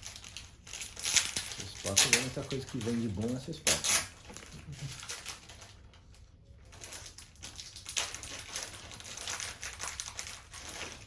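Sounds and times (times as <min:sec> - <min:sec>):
small tools clicking and scraping: 0:00.0 - 0:05.7.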